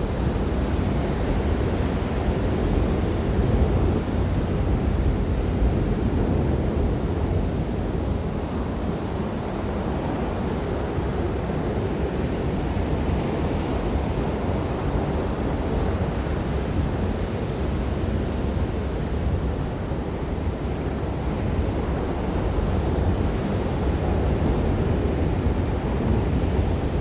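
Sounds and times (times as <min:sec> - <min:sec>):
wind: 0:00.0 - 0:27.0.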